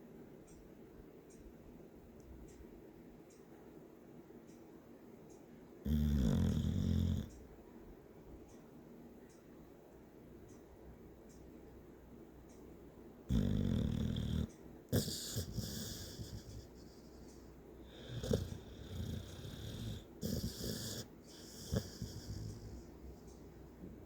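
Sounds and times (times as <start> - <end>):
person snoring: 5.9 - 7.3, 13.3 - 16.8, 17.9 - 22.8
noisy breaths with hiss: 13.3 - 23.8.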